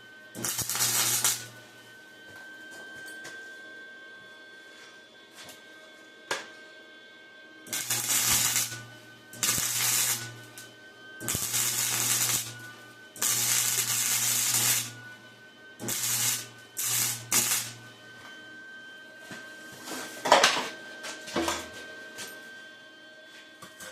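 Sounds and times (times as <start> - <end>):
welder low hum: 0.0 - 22.5
welding arc crackling and hissing: 0.4 - 1.6, 7.7 - 10.6, 11.2 - 15.0, 15.8 - 17.8.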